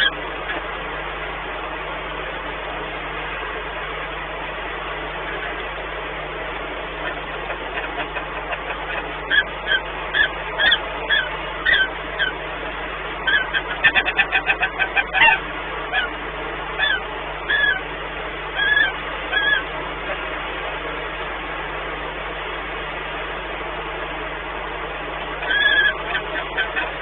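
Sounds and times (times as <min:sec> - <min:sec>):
falcons chirping calls: 0:06.9 - 0:12.4, 0:13.2 - 0:16.2, 0:16.8 - 0:17.9, 0:18.6 - 0:20.2, 0:25.4 - 0:27.0.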